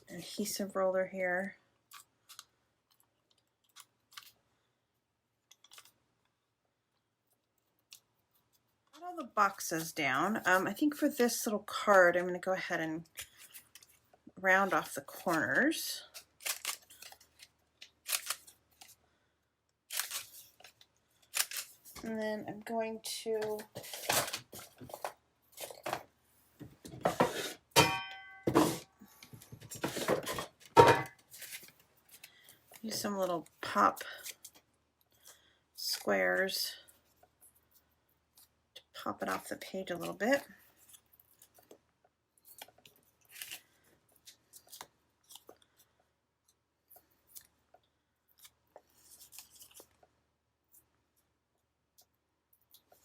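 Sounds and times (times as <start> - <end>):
paper clicks and crinkles: 1.9 - 4.4, 5.5 - 6.0, 13.1 - 19.0, 19.9 - 22.1, 31.2 - 35.4, 40.0 - 41.8, 42.4 - 50.9
knocks and scrapes on desk: 26.6 - 27.6, 28.5 - 28.9.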